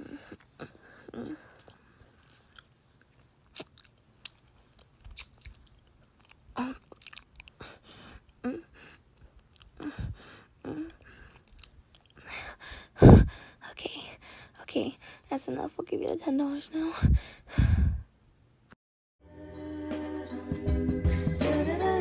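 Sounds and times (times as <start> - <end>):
wet kissing and lip-smacking: 3.5 - 7.8.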